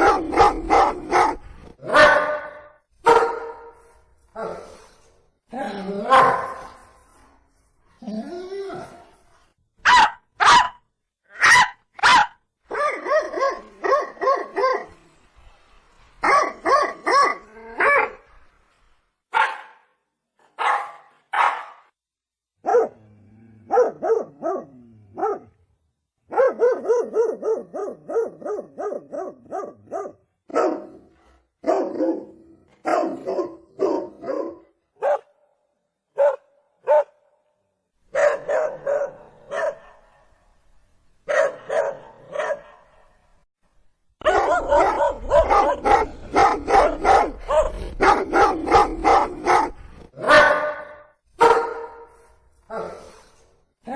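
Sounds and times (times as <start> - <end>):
dog barking: 0.0 - 3.8, 6.1 - 6.8, 9.8 - 10.8, 11.4 - 14.9, 16.2 - 18.2, 19.3 - 19.9, 20.6 - 21.9, 22.6 - 23.0, 23.7 - 25.6, 26.3 - 31.0, 31.6 - 35.4, 36.2 - 37.2, 38.1 - 40.3, 41.3 - 43.0, 44.2 - 52.2.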